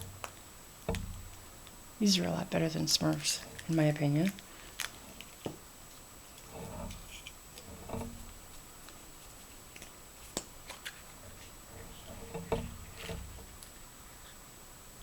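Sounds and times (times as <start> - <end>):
soft handling thumps: 0.0 - 1.8, 5.0 - 9.4, 11.1 - 13.7.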